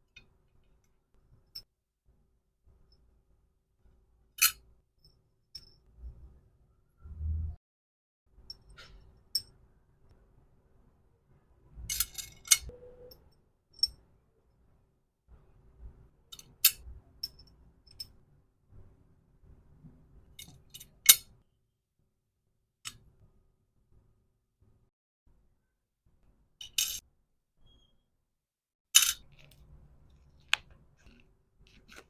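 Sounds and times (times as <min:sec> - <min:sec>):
small objects clicking and clinking: 0:26.6 - 0:27.0, 0:29.0 - 0:32.0.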